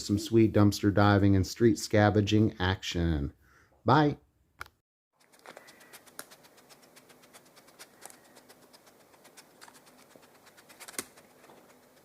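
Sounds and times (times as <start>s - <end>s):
scratchy rustle: 5.2s - 12.0s.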